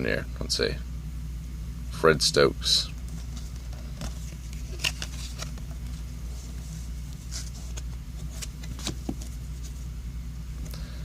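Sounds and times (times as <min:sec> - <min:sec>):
cards flipping swishes: 0:03.2 - 0:09.8.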